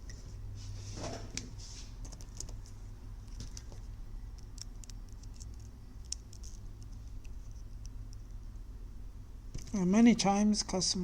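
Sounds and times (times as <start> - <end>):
low electrical hum: 0.0 - 11.0
small objects clicking and tapping: 3.3 - 8.3.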